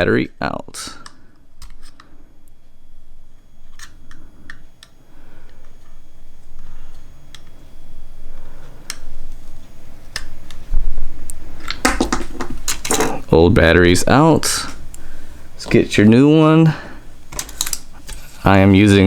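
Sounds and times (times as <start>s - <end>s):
screwdriver clicking on plastic: 17.3s - 18.2s.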